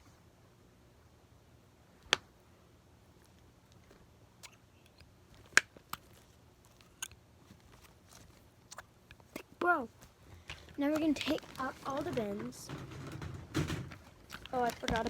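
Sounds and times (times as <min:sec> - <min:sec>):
faint room hum: 0:00.0 - 0:15.0.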